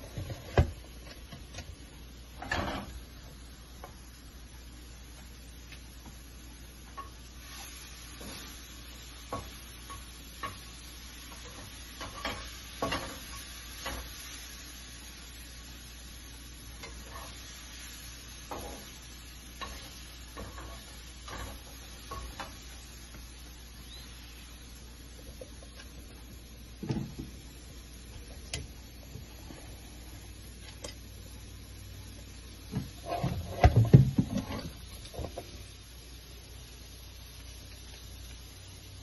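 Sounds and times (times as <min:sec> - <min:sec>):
utensil scraping a pan: 0:02.4 - 0:03.0, 0:11.3 - 0:14.2, 0:16.8 - 0:17.6, 0:19.6 - 0:22.7, 0:32.7 - 0:35.5.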